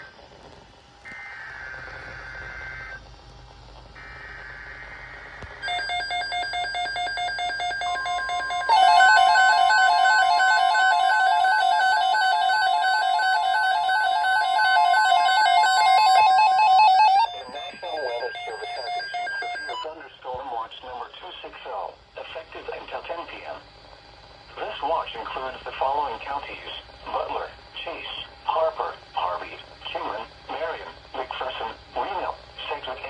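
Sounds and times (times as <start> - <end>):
steady pure tone: 4.2 - 20.6
warbling electronic alarm: 5.6 - 20.0
screechy data bursts: 6.6 - 19.9.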